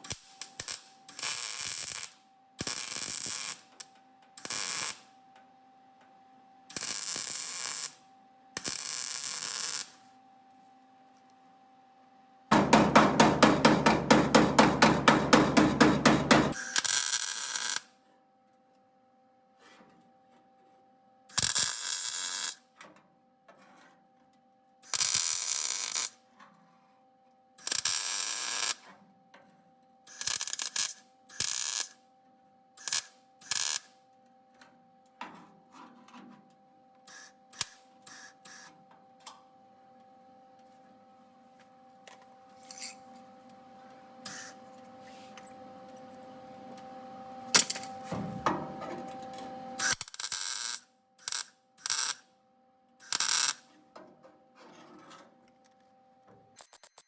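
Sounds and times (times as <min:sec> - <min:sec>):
crackling welding arc: 0:00.0 - 0:05.1, 0:06.7 - 0:08.0, 0:08.6 - 0:10.0, 0:15.2 - 0:17.8, 0:21.3 - 0:22.6, 0:24.9 - 0:26.2, 0:27.6 - 0:28.8, 0:30.1 - 0:32.0, 0:32.8 - 0:33.9, 0:49.8 - 0:52.2, 0:53.0 - 0:53.6
steady hum: 0:11.8 - 0:16.6.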